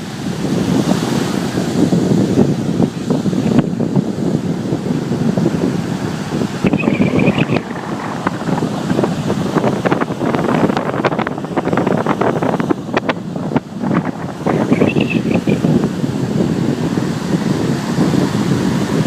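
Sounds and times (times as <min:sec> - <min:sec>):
surf churning and splashing: 0:00.0 - 0:19.0.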